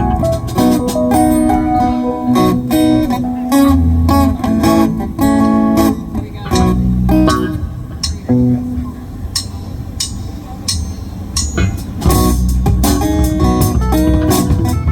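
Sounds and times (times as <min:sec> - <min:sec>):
live band with guitar: 0:00.0 - 0:14.9.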